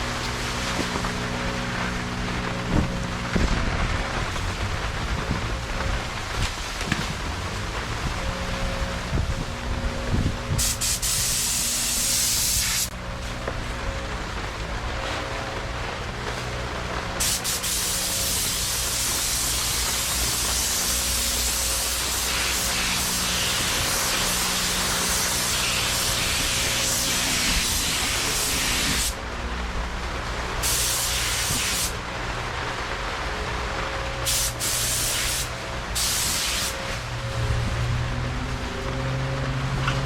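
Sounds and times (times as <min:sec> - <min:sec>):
paint spray gun hissing: 0:10.6 - 0:13.0, 0:17.2 - 0:29.2, 0:30.6 - 0:32.0, 0:34.3 - 0:37.0.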